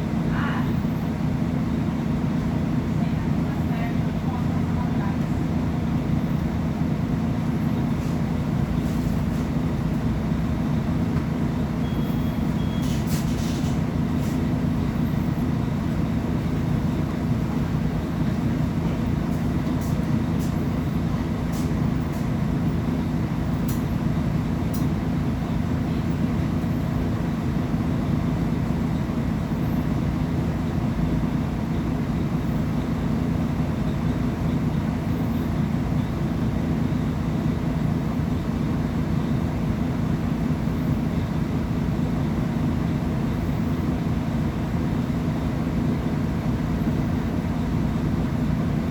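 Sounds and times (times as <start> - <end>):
bus diesel engine drone: 0.0 - 48.9.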